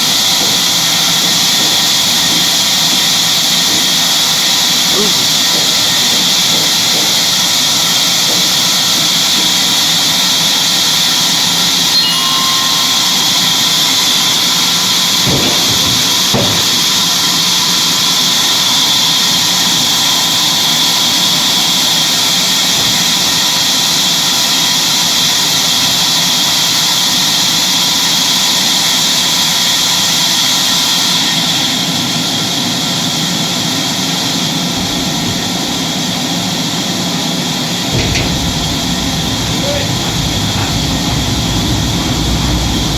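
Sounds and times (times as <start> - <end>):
sawmill machinery whirring: 0.0 - 24.7, 37.6 - 42.9.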